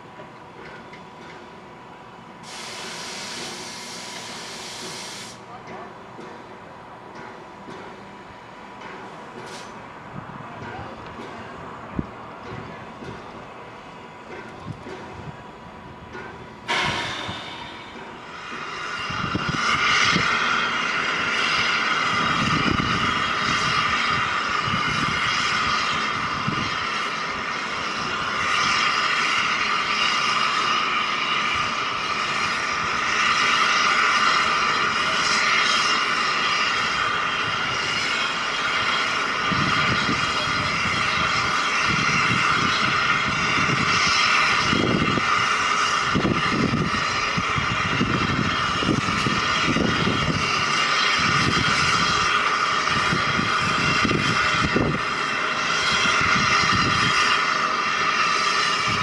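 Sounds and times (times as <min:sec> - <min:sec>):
steam escaping with a roar: 0:02.4 - 0:05.6, 0:09.3 - 0:10.9, 0:16.6 - 0:59.0.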